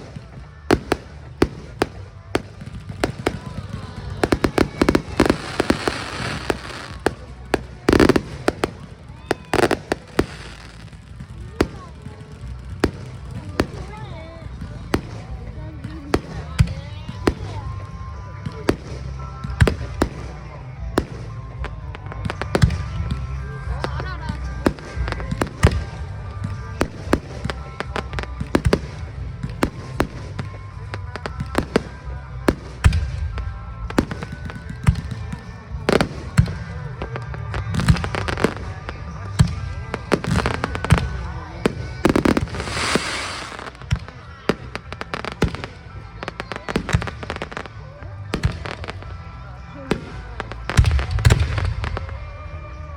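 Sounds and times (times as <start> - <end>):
firework bursts: 0.0 - 20.4, 35.9 - 47.8
fireworks popping and crackling: 0.0 - 52.9
music playing: 0.0 - 52.9.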